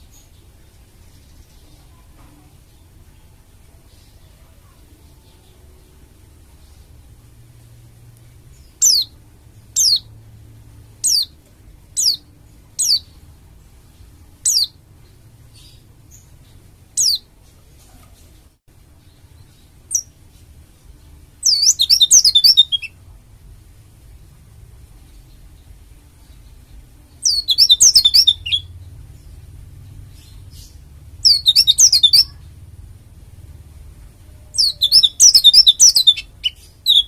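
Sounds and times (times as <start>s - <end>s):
bird twittering song: 8.5s - 10.1s, 11.0s - 13.2s, 13.9s - 17.3s, 19.0s - 23.0s, 25.0s - 32.6s, 34.3s - 37.0s
bird high descending calls: 21.4s - 22.9s, 27.2s - 28.7s, 31.2s - 32.5s, 34.3s - 37.0s.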